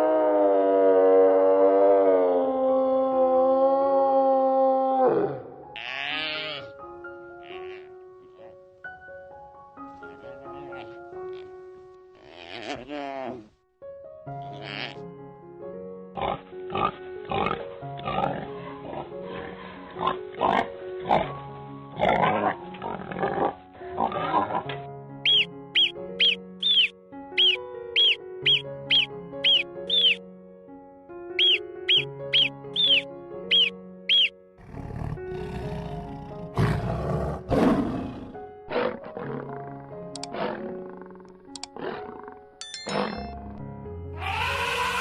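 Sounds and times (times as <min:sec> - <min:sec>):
background music: 0:00.0 - 0:45.0
large animal roaring: 0:34.6 - 0:42.4, 0:44.2 - 0:45.0.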